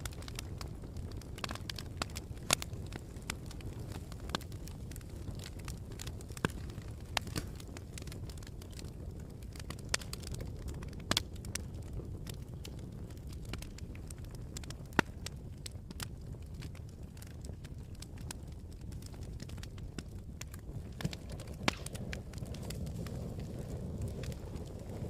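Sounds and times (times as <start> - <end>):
campfire crackling and popping: 0.0 - 25.0
steady low rumble: 13.5 - 25.0.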